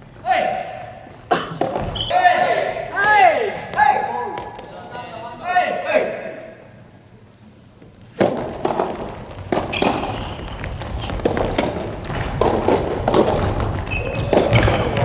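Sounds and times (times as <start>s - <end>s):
shoe squeaks on court: 1.8s - 2.2s, 9.6s - 15.0s
ball struck by rackets: 8.2s - 15.0s.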